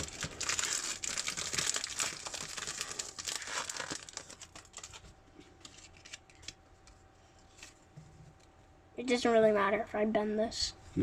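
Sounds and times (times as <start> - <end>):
foil wrapper crinkling and tearing: 0.0 - 6.6.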